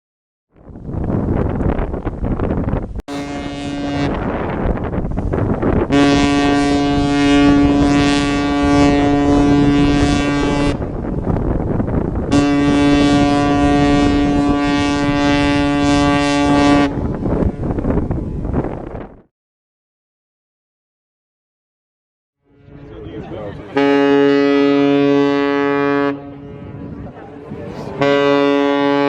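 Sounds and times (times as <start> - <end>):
ship horn blasts: 3.1 - 19.0, 22.4 - 29.0.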